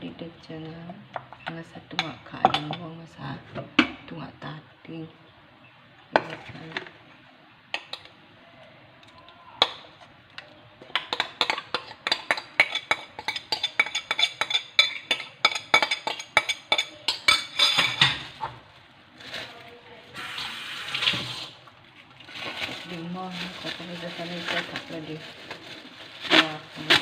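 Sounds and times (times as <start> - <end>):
metal utensil clinking against bowl: 10.9 - 18.2.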